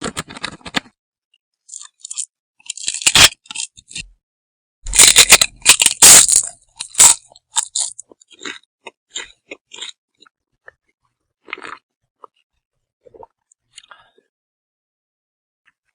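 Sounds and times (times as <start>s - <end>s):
crunchy biting and chewing: 1.7s - 4.1s, 4.9s - 12.4s, 13.0s - 14.0s.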